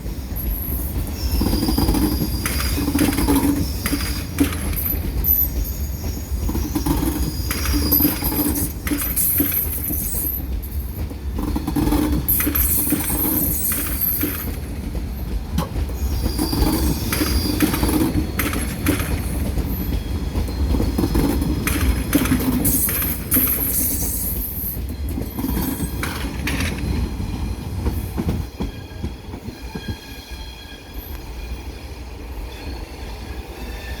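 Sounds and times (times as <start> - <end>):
electric train low rumble: 0.0 - 34.0
high wheel squeal: 0.3 - 10.5, 16.0 - 26.6
wheels clicking over rail joints: 0.4 - 29.8.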